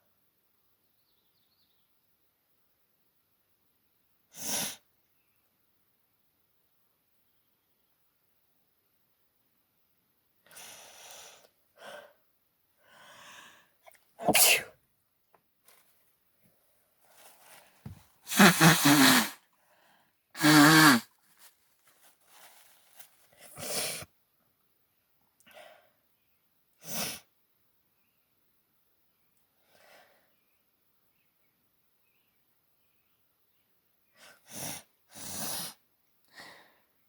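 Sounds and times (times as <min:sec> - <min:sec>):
quiet breaths: 0:09.9 - 0:14.2, 0:15.7 - 0:24.3, 0:25.2 - 0:27.4, 0:29.2 - 0:31.3, 0:32.0 - 0:37.0
woman sneezing: 0:18.3 - 0:19.4, 0:20.4 - 0:21.0.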